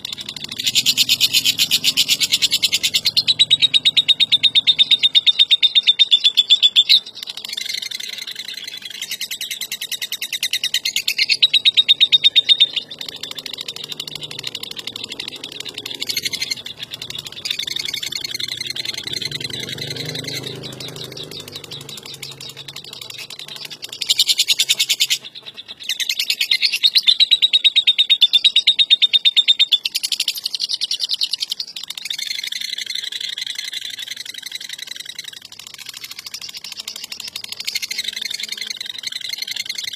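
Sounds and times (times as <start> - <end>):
lovebird rattling chatter: 0.0 - 6.1, 7.0 - 27.0, 29.9 - 39.9.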